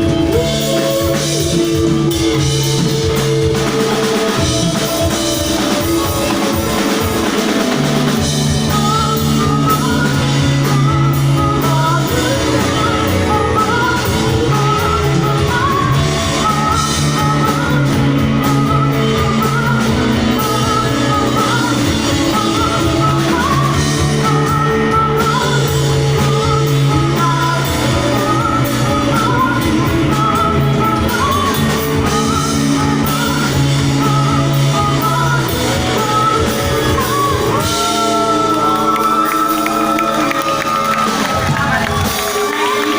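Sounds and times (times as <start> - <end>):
drum kit: 0.0 - 42.9
guitars: 0.0 - 42.9
person singing: 0.0 - 42.9.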